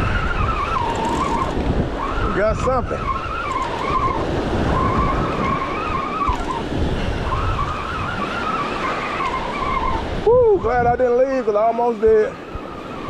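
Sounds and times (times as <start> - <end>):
fishing reel whine: 0.0 - 10.8, 12.0 - 13.0
surf washing in: 0.0 - 13.0
wind on microphone: 0.0 - 13.0.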